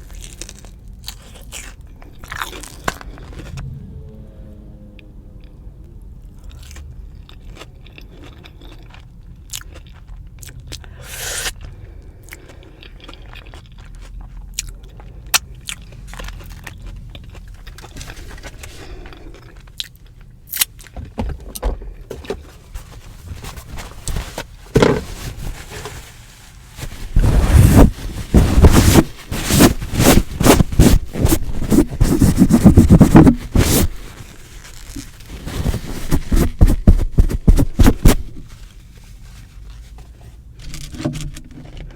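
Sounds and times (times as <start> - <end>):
crunching fried coating: 0.0 - 3.5
quiet chewing: 6.2 - 21.0.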